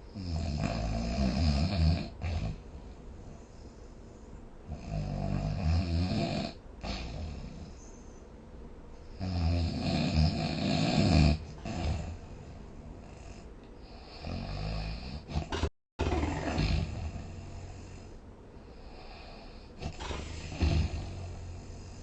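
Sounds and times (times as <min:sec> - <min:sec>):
person snoring: 0:00.2 - 0:02.7, 0:09.2 - 0:18.2, 0:18.8 - 0:22.0
quiet breathing: 0:02.1 - 0:05.0, 0:06.5 - 0:09.4, 0:11.4 - 0:15.7, 0:16.9 - 0:22.0.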